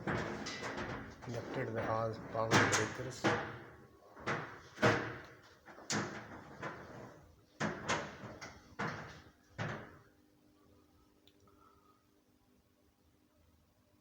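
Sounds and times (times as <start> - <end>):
faint steady hum: 9.2 - 14.0.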